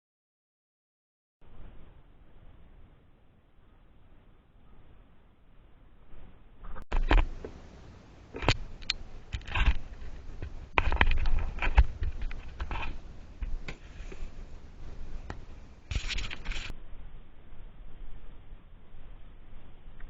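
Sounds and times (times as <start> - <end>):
food preparation scraping and crinkling: 15.2 - 16.7.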